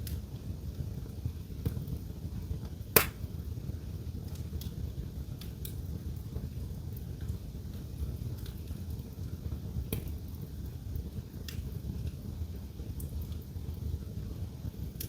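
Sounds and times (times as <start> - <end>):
low steady fire rumble: 0.0 - 15.0
wood fire crackling: 0.0 - 15.0
loud sharp crack: 3.0 - 3.3.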